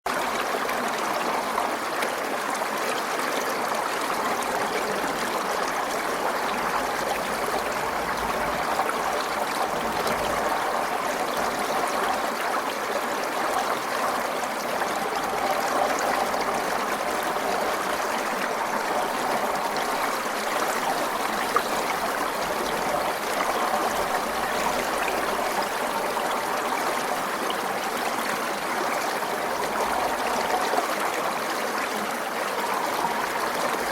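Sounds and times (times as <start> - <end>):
stream flowing: 0.1 - 33.9.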